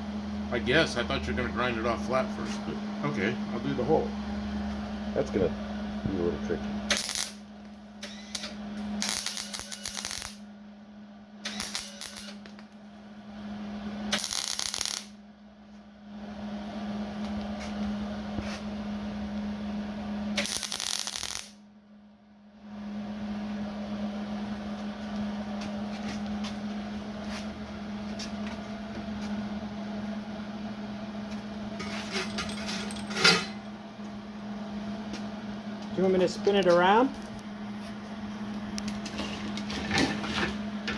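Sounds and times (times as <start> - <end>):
steady hum: 0.0 - 40.9
welder arc crackling: 6.9 - 10.4, 11.5 - 12.7, 14.1 - 15.2, 20.4 - 21.6.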